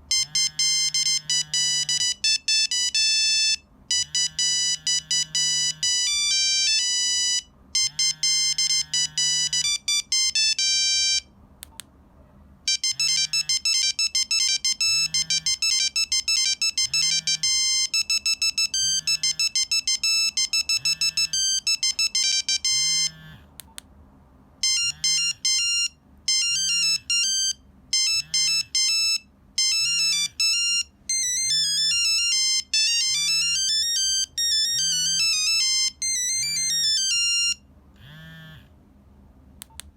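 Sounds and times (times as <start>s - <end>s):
monophonic phone ringtone: 0.1s - 11.3s, 12.7s - 23.4s, 24.6s - 38.6s.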